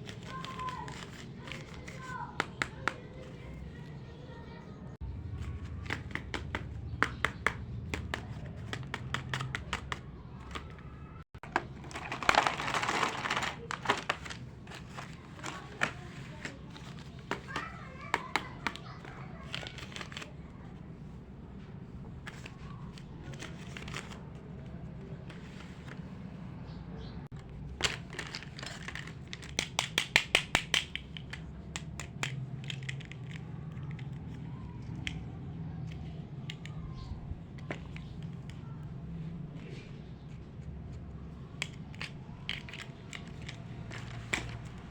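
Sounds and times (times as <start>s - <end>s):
plastic bag crinkling: 11.4s - 14.9s
plastic toy pieces clicking: 11.4s - 16.0s, 27.8s - 35.3s, 35.9s - 36.8s, 41.5s - 44.9s.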